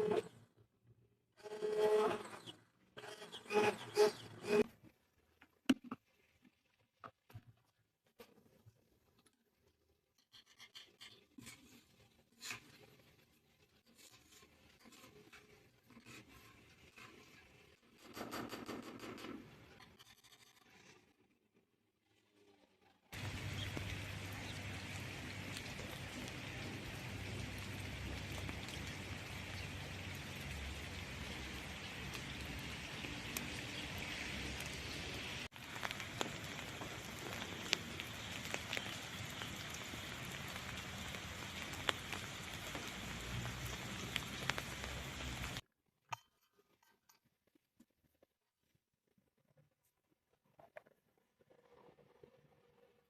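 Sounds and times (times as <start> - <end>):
raindrop ticks: 23.2 - 45.6
steady rain falling: 23.2 - 45.6.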